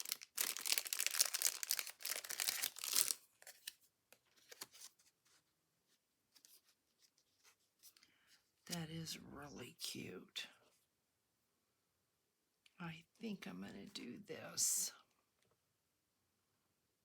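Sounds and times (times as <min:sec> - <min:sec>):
paper crackling and crinkling: 0:00.0 - 0:05.4.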